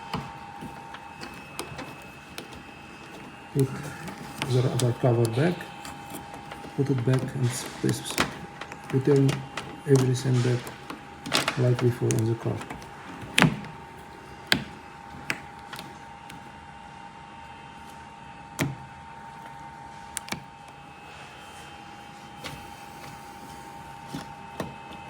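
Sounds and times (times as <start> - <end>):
plastic trim clicks and knocks: 0.0 - 16.4.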